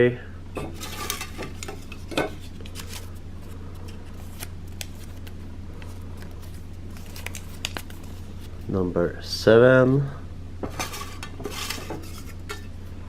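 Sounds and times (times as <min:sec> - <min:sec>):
steady low hum: 0:00.0 - 0:13.0
paper tickets rustling: 0:00.8 - 0:08.6.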